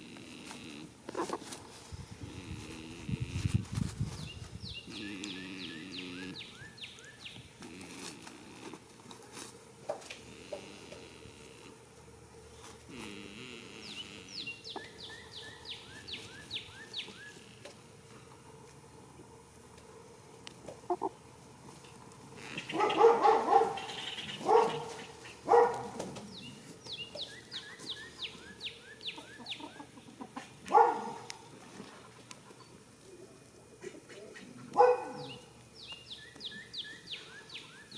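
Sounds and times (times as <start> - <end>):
goat snoring: 0.0 - 3.9, 4.7 - 6.8, 7.6 - 9.2, 10.0 - 11.8, 12.5 - 14.6, 22.3 - 25.1.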